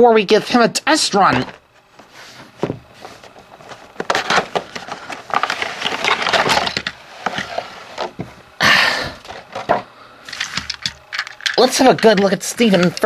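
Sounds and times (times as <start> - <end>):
plastic packaging crackling: 3.3 - 7.0.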